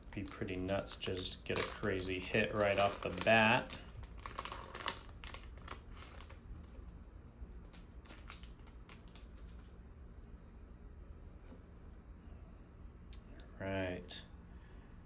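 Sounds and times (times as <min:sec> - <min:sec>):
foil wrapper crinkling: 0:00.0 - 0:06.9, 0:07.6 - 0:09.7.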